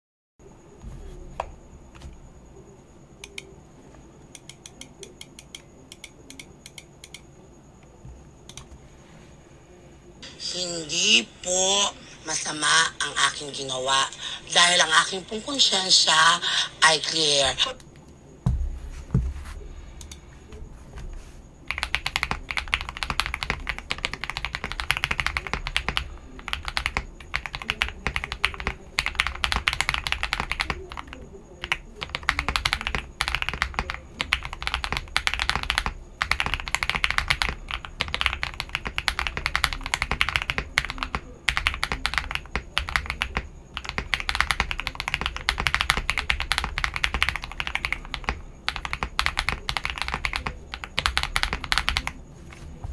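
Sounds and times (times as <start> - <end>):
mechanical keyboard typing: 4.2 - 7.3, 20.0 - 52.2.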